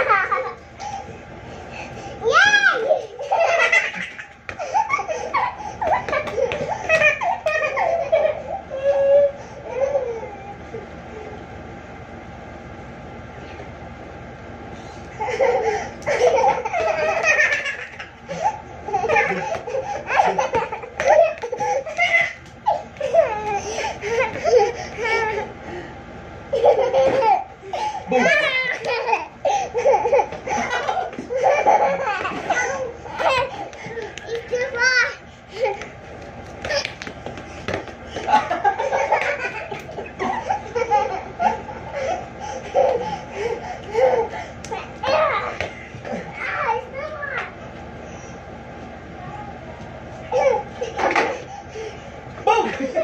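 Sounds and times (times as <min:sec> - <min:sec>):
toddlers laughing and squealing: 0:02.1 - 0:11.0, 0:15.2 - 0:25.6, 0:26.5 - 0:37.1, 0:38.2 - 0:47.1.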